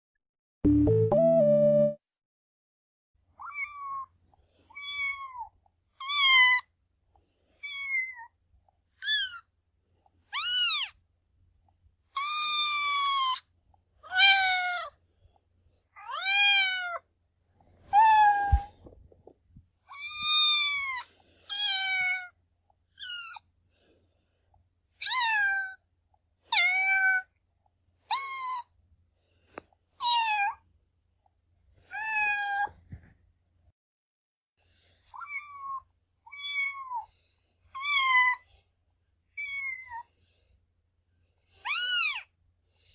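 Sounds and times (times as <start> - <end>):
cat meowing: 3.4 - 4.1, 4.7 - 6.7, 7.6 - 8.3, 10.3 - 11.0, 16.0 - 17.0, 25.0 - 25.8, 26.5 - 27.3, 30.0 - 30.6, 35.2 - 37.1, 37.8 - 38.4, 39.4 - 40.0.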